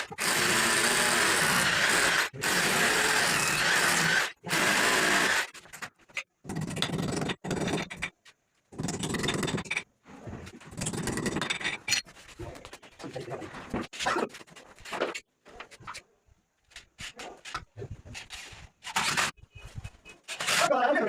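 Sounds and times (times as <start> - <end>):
power tool running on wood: 0.2 - 5.5.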